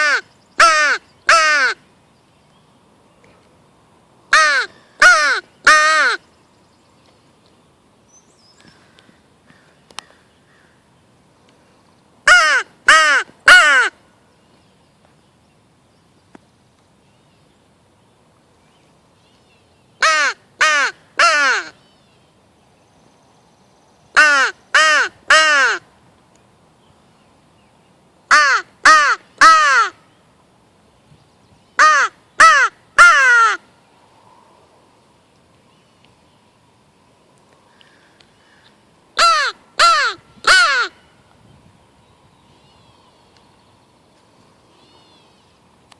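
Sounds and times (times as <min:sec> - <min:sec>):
crow call caws: 0:00.0 - 0:01.8, 0:08.6 - 0:10.9, 0:31.8 - 0:33.6.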